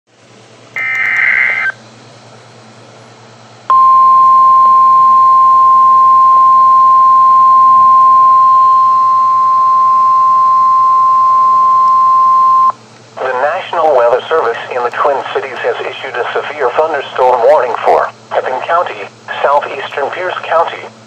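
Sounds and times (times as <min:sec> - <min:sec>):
digital header tones: 0:00.8 - 0:01.8
steady warning alarm tone: 0:00.8 - 0:01.8, 0:03.7 - 0:12.7.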